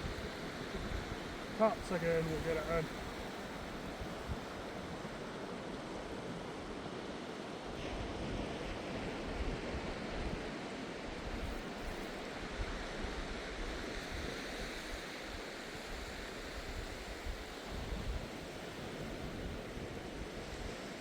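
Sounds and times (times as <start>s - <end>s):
waves washing on beach: 0.0s - 21.0s
wind buffeting microphone: 15.9s - 20.8s.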